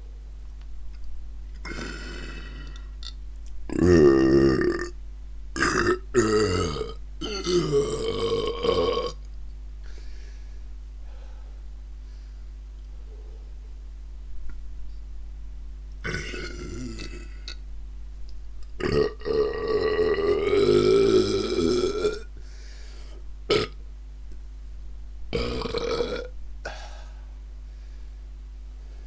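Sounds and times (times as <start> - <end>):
person burping: 1.6 - 3.1, 3.7 - 5.0, 5.6 - 9.2, 16.0 - 17.6, 18.8 - 22.3, 23.5 - 23.8, 25.3 - 27.0.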